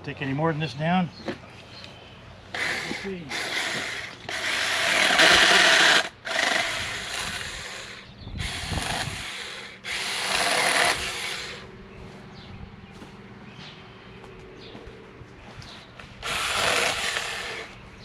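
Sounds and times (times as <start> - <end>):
chainsaw cutting wood: 2.6 - 11.6, 16.2 - 17.7.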